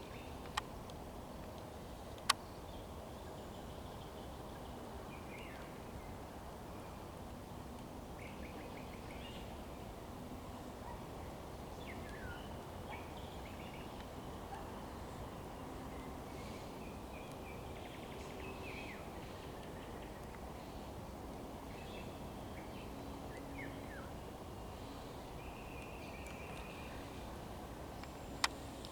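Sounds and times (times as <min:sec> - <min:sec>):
low outdoor background noise: 0:00.0 - 0:28.9
small birds singing and calling: 0:11.2 - 0:28.9.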